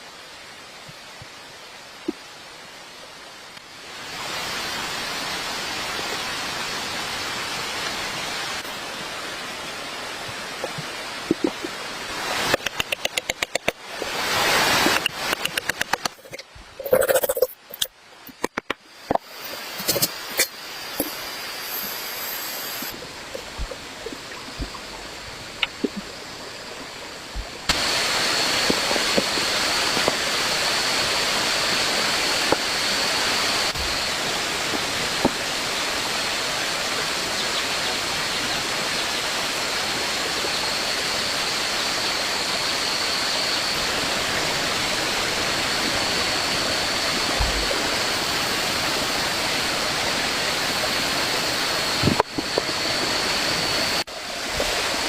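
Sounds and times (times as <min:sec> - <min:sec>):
flowing water: 0:00.0 - 0:55.0.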